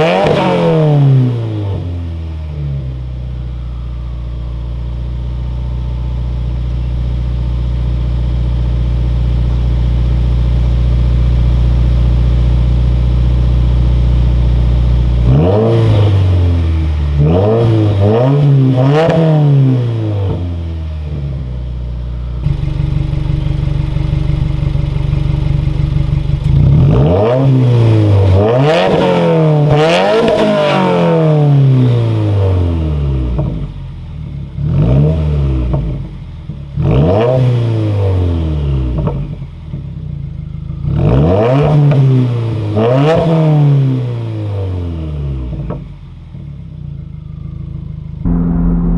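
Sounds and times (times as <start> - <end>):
car engine idling and revving: 0.0 - 48.9.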